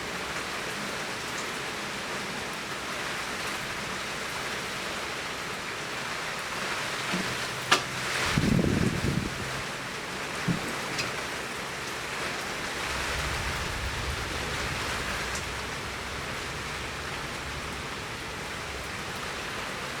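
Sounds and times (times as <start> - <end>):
heavy rain hiss: 0.0 - 20.0
raindrop ticks: 10.3 - 12.5.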